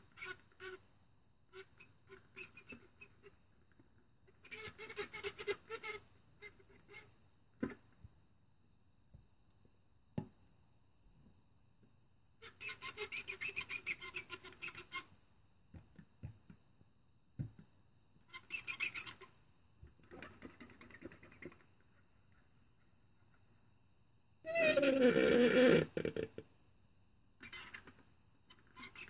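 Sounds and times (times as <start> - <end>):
cup and straw squeaking: 24.5 - 26.4, 28.7 - 29.0.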